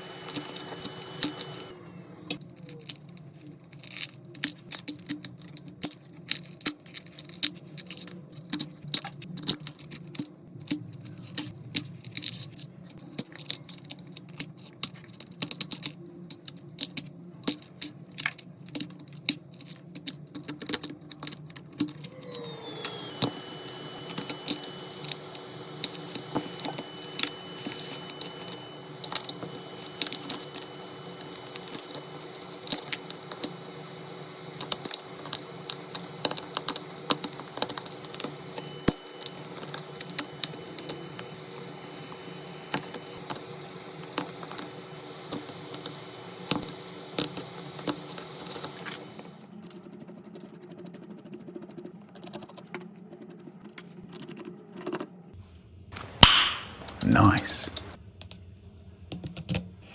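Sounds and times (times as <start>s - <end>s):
machine hum: 0.0s - 2.6s, 21.9s - 49.5s.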